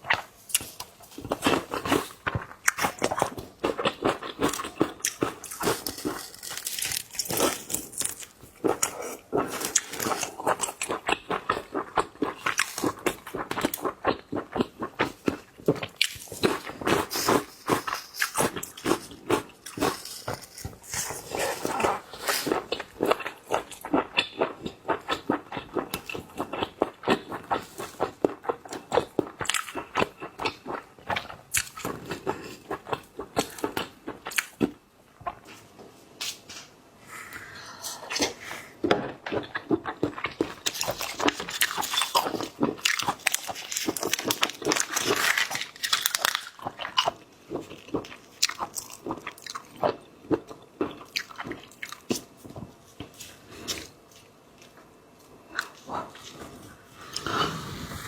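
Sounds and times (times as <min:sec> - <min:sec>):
crunchy bites of shrimp: 0:00.1 - 0:14.0.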